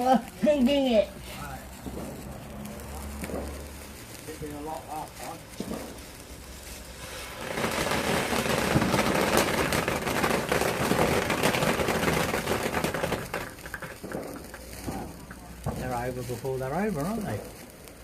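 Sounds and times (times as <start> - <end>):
firework crackling and popping: 0.0 - 18.0.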